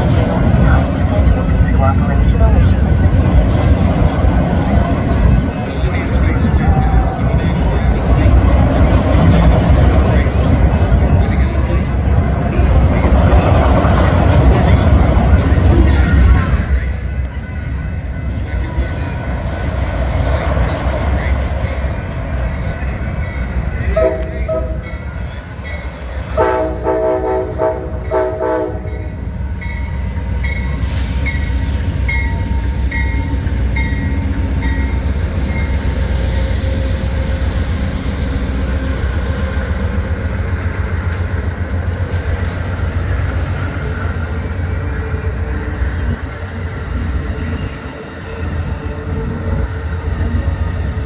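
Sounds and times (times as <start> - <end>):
passing train rumble: 0.0 - 51.0
train horn blast: 23.9 - 25.0, 26.3 - 29.2.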